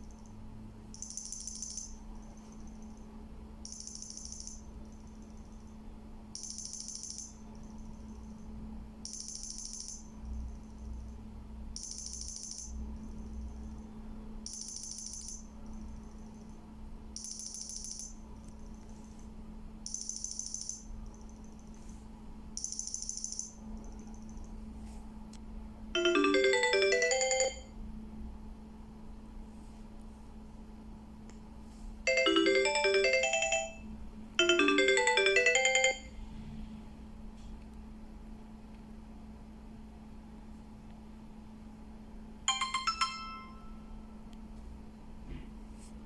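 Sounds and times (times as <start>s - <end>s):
steady low hum: 0.0s - 46.0s
high-pitched trilled ringtone beep: 1.0s - 2.8s, 3.7s - 4.6s, 6.4s - 7.4s, 9.1s - 10.1s, 11.8s - 12.7s, 14.5s - 15.5s, 17.2s - 18.2s, 26.0s - 27.7s, 32.1s - 36.2s, 42.5s - 44.0s.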